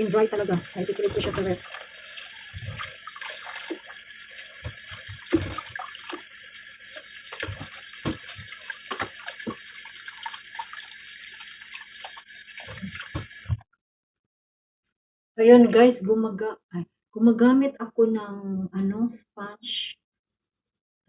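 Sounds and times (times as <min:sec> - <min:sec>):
water splashes: 0:00.0 - 0:13.6
tap running into a sink: 0:00.9 - 0:13.6
fruit knocking against sink: 0:07.3 - 0:09.6, 0:12.7 - 0:13.6.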